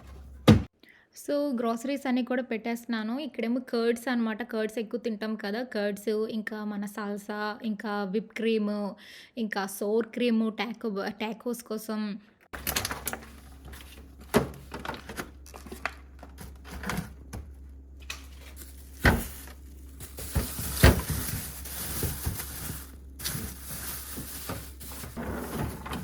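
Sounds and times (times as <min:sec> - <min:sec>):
containers knocking on shelves: 0:00.0 - 0:00.7
packages rustling: 0:12.6 - 0:26.0
plastic containers clicking and clunking: 0:12.6 - 0:26.0.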